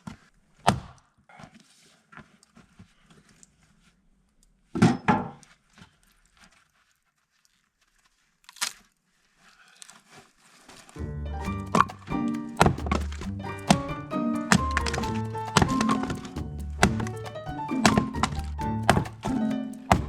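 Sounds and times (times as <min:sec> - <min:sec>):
rustling and clatter of wood: 0:04.8 - 0:20.0
split wood pieces knocking: 0:11.6 - 0:20.0
axe striking log: 0:12.6 - 0:17.1, 0:17.8 - 0:20.0.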